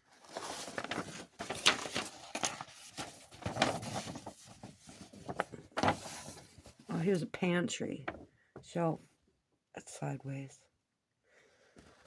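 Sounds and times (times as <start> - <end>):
paper sheets rustling and sliding: 0.1 - 7.0.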